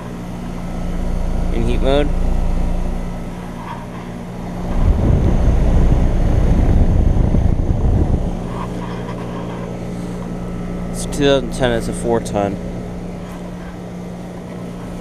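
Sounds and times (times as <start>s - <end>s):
heat pump humming: 0.0s - 15.0s
low rushing rumble: 4.5s - 8.6s.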